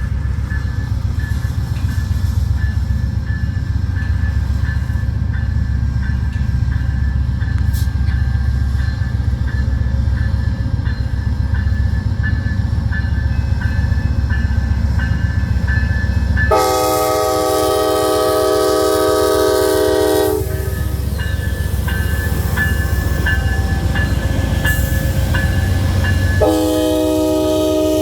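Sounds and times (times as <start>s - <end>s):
crossing bell dinging: 0.0s - 28.0s
train rumble: 0.0s - 28.0s
train air horn chord: 16.5s - 21.0s, 26.4s - 28.0s.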